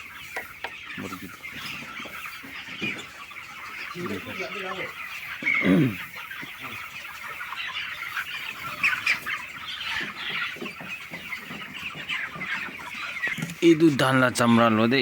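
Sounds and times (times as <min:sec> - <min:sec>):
chicks chirping and clucking: 0:00.0 - 0:15.0.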